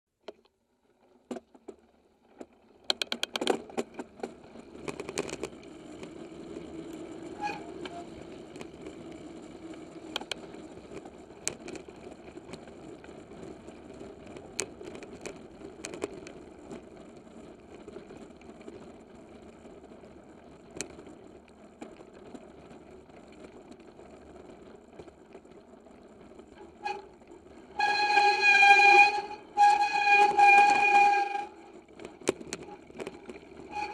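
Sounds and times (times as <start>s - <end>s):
bike tyres rolling on dirt: 0.6s - 33.9s
bike rattling: 0.9s - 33.9s
pulsing horn-like tone: 27.7s - 31.7s.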